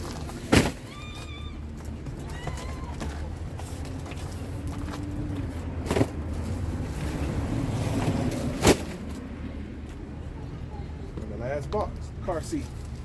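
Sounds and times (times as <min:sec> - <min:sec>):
boxes being moved: 0:00.0 - 0:09.2.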